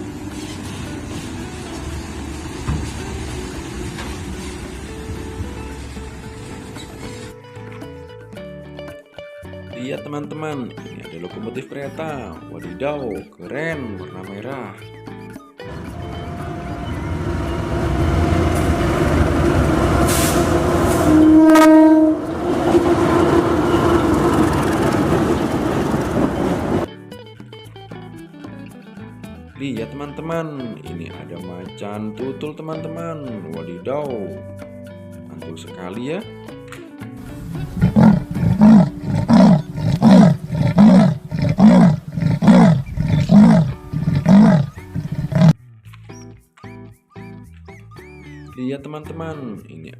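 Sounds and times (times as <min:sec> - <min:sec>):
train rumbling: 0:00.0 - 0:07.4, 0:15.7 - 0:26.9, 0:37.3 - 0:45.5
train horn: 0:15.7 - 0:26.8
leopard roaring: 0:37.3 - 0:45.6.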